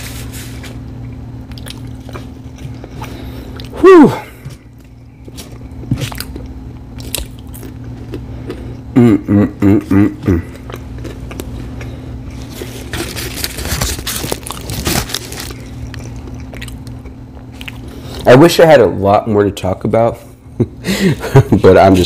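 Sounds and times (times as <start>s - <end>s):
chewing and biting food: 1.0s - 3.8s, 4.4s - 9.0s, 9.8s - 18.3s
throaty vocal pulses: 8.9s - 10.6s.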